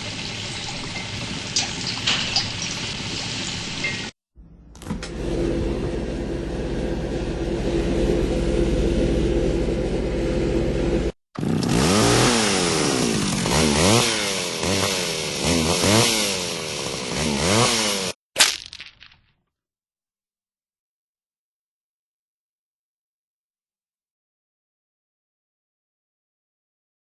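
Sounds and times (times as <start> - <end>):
chainsaw engine idling and revving: 5.1 - 18.2.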